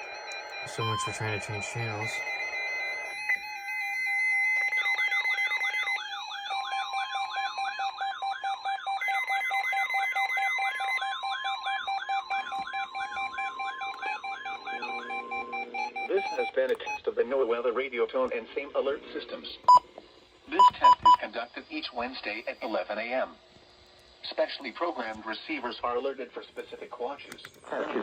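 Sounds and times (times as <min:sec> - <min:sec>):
warbling siren-like alarm: 0:00.0 - 0:17.6
fast beeping: 0:09.0 - 0:17.1
steady electronic tones: 0:10.1 - 0:21.2.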